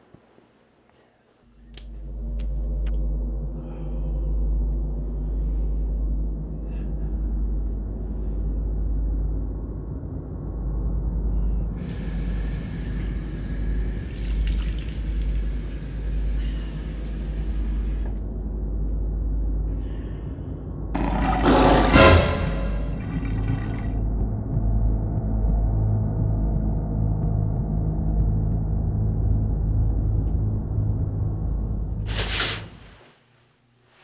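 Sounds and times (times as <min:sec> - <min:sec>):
deep rumbling drone: 0:01.6 - 0:12.6
rushing water-like hiss: 0:11.8 - 0:18.3, 0:32.0 - 0:33.2.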